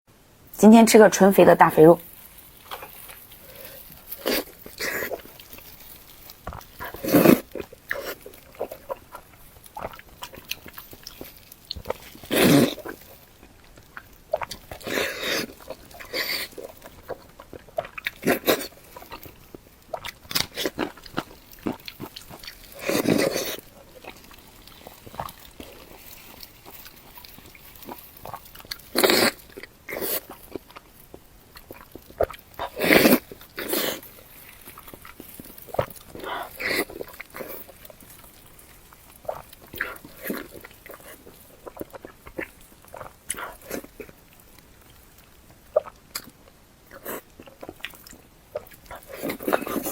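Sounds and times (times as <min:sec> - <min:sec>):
person chewing and smacking: 0:02.0 - 0:49.9.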